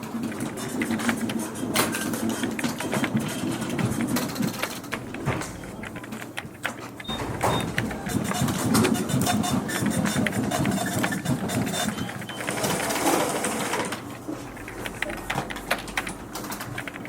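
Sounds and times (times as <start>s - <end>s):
fax machine mechanical chatter: 0.0s - 17.0s
sharp key clicks: 14.5s - 17.0s.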